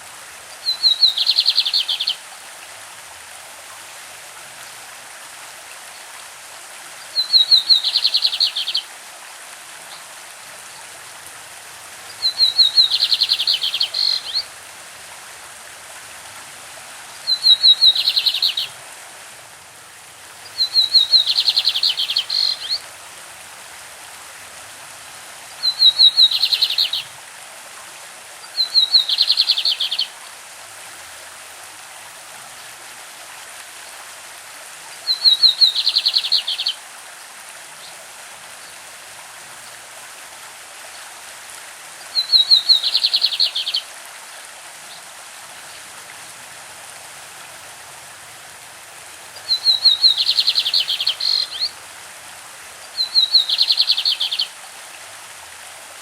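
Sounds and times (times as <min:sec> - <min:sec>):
stream rushing: 0:00.0 - 0:56.0
bird singing buzzy trill: 0:20.6 - 0:22.8.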